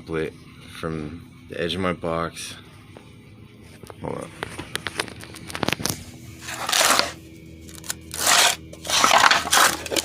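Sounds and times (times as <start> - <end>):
rasping cutting strokes: 6.4 - 10.0.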